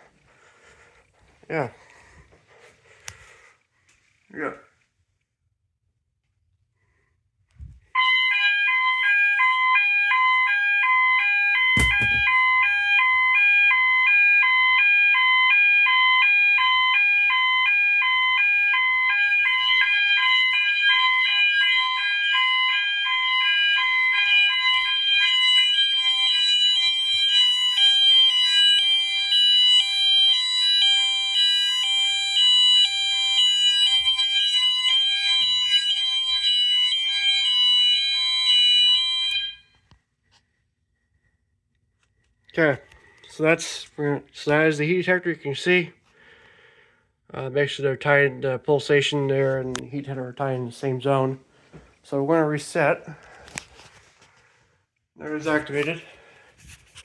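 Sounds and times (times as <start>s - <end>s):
fire alarm sounders: 7.9s - 39.9s, 55.3s - 56.3s.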